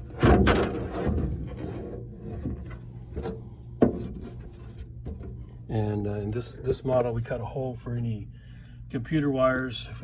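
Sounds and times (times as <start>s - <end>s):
rubbing and scraping on desk: 0.0s - 5.3s.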